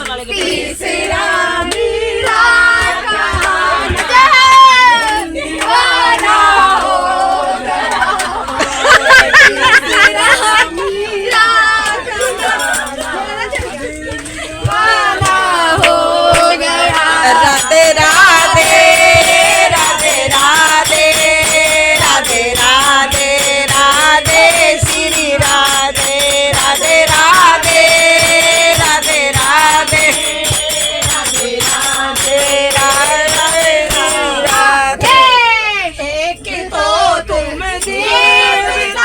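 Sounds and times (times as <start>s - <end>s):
women singing together: 0.0s - 39.0s
fast percussive beat: 11.3s - 35.4s.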